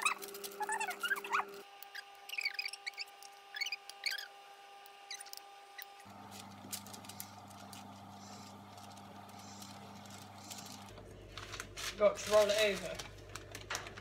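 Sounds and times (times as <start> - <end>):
faint high squeaks: 0.0 - 4.4.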